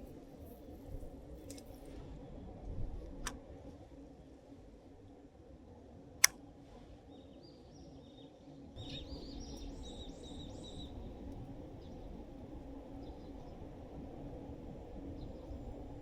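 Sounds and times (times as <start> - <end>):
songbird chirping: 7.2 - 12.2.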